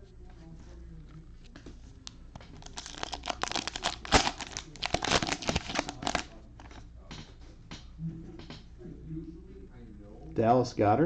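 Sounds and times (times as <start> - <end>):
plastic wrapper crinkling and tearing: 2.5 - 6.8.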